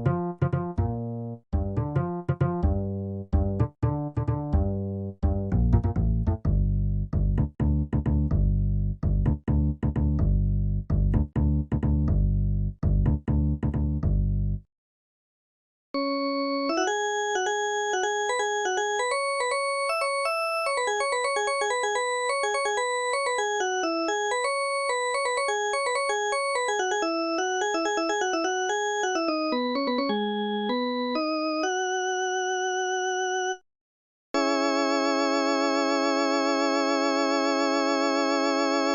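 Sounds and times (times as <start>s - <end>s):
synth melody: 16.0s - 33.4s.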